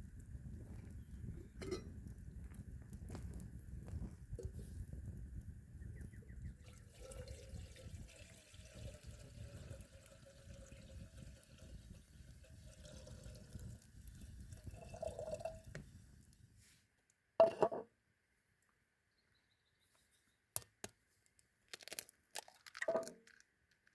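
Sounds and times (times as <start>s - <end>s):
liquid pouring and dripping: 6.5s - 15.9s.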